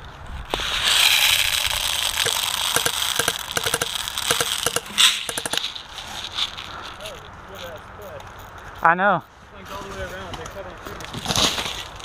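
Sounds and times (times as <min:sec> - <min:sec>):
steady rushing hiss: 0:00.5 - 0:07.5
airsoft guns firing: 0:02.0 - 0:05.7.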